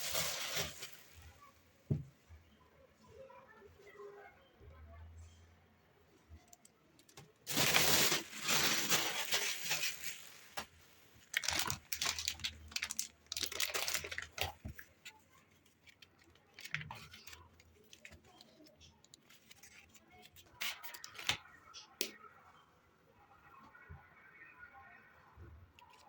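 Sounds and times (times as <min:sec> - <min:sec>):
rustling and crinkling: 0:00.0 - 0:02.1, 0:07.4 - 0:21.4.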